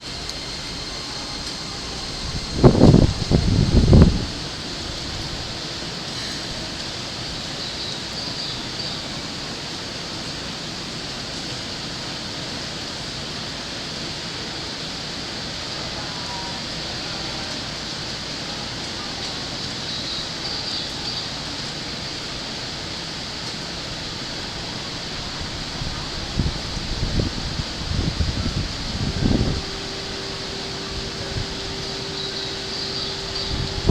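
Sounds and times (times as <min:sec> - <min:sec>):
steady rushing background noise: 0:00.0 - 0:33.9
faint high chirps: 0:28.1 - 0:33.9.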